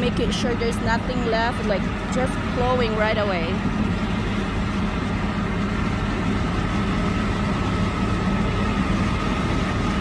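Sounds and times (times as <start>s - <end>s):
harvesting machinery engines droning: 0.0s - 10.0s.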